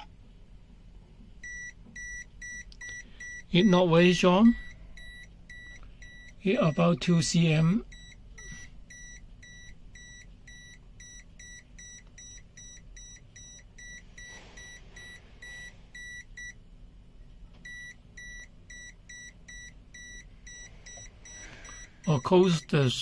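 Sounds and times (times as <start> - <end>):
voltage detector beeping: 7.9 - 16.6, 17.7 - 22.8.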